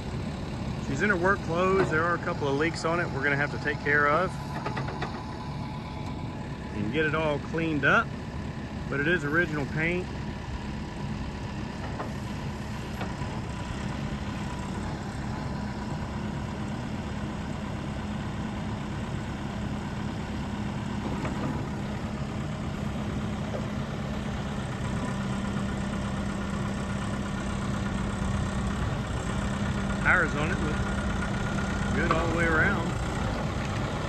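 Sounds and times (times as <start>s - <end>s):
diesel engine idling: 0.0s - 34.0s.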